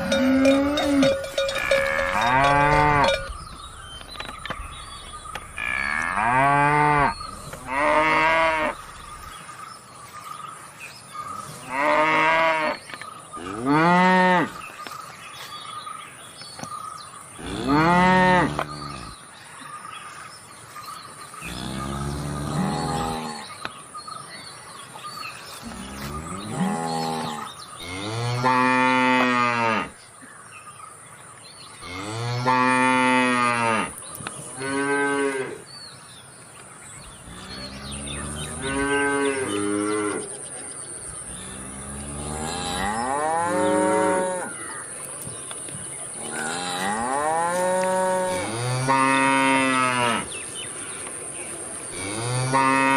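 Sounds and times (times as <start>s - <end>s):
cattle mooing: 0.0s - 3.5s, 4.9s - 9.1s, 41.3s - 44.6s.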